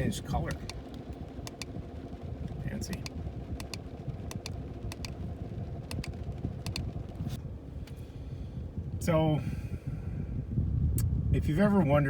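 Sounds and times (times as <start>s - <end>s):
car engine idling: 0.0s - 7.4s
sharp paired clicks: 0.5s - 1.7s, 2.8s - 5.2s, 5.9s - 6.9s.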